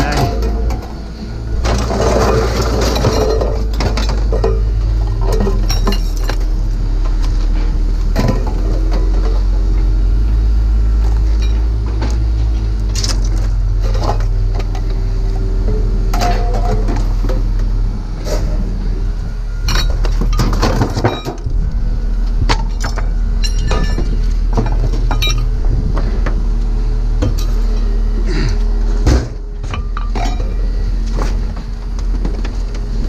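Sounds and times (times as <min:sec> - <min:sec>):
scrap metal clanking: 0:00.0 - 0:06.5, 0:12.9 - 0:18.8, 0:22.4 - 0:26.4, 0:27.2 - 0:31.7
low hum: 0:00.0 - 0:33.0.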